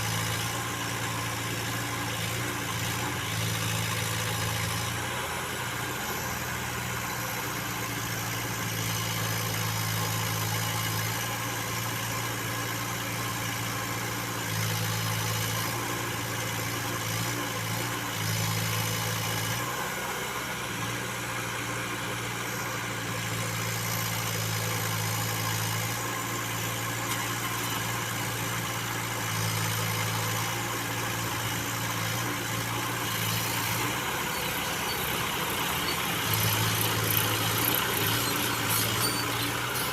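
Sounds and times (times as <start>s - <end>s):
diesel engine running: 24.1s - 39.9s.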